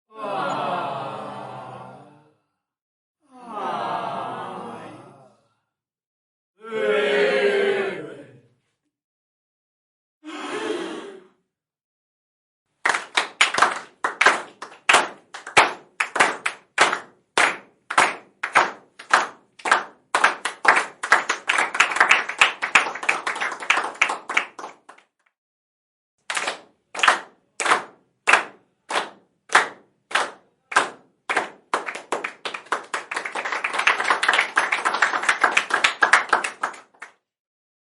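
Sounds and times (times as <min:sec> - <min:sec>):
crowd clapping in unison: 0:12.8 - 0:25.2, 0:26.2 - 0:37.4
scattered applause: 0:12.8 - 0:25.2, 0:26.3 - 0:37.3.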